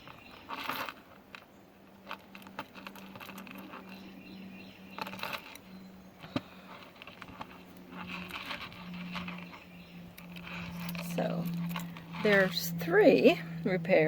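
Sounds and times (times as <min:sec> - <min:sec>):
faint birdsong: 0:00.0 - 0:14.0
steady low hum: 0:00.0 - 0:14.0.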